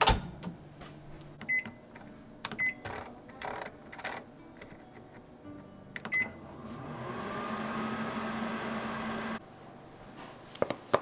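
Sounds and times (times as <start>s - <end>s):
microwave beep: 1.4s - 1.8s, 2.6s - 2.8s, 6.1s - 6.5s
microwave humming with fan: 6.0s - 9.4s.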